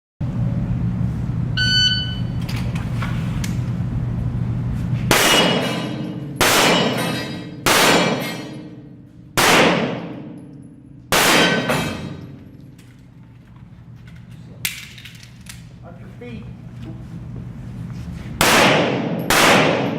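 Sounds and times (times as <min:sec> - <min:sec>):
steady low hum: 0:00.2 - 0:19.9
short beep: 0:01.6 - 0:02.4
pistol shots ringing: 0:05.1 - 0:08.8, 0:09.4 - 0:10.4, 0:11.1 - 0:12.3, 0:18.4 - 0:19.9.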